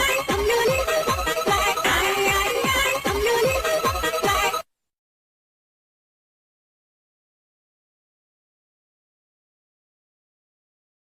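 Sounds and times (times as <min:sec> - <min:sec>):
electronic dance music: 0:00.0 - 0:04.6.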